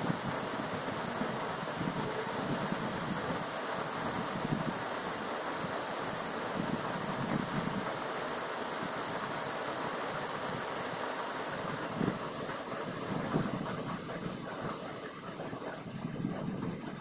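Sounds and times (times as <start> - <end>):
wind buffeting microphone: 0.0 - 8.0, 11.5 - 17.0
rushing flowing water: 0.0 - 15.9.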